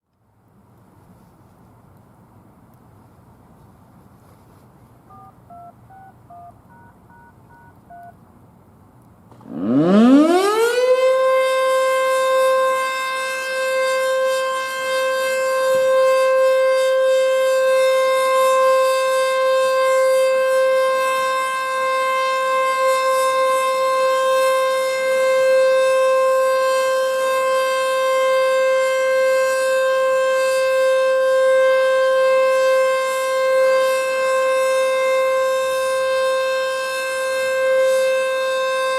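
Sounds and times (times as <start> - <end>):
faint two-tone beeps: 5.1 - 8.1
warning siren steady high tone: 9.4 - 38.9.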